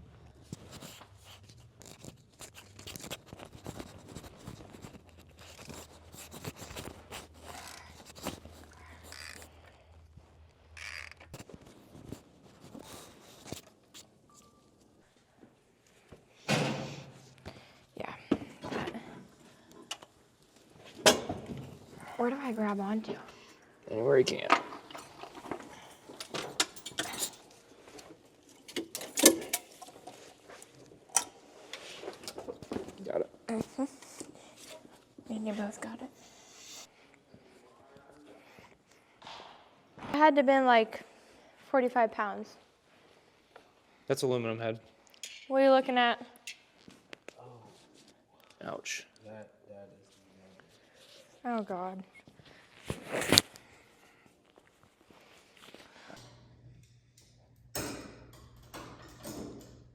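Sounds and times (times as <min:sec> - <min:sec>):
metal tools clicking and scraping: 0:24.6 - 0:30.3, 0:56.2 - 0:59.9
metallic clinks and knocks: 0:24.9 - 0:27.6.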